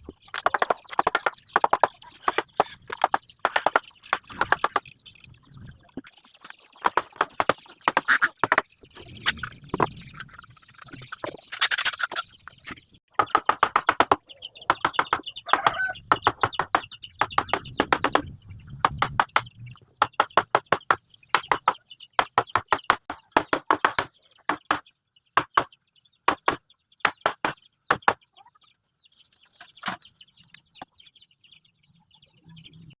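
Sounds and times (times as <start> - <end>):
hammering on wood: 13.2 - 18.2, 18.8 - 24.8, 26.3 - 28.2.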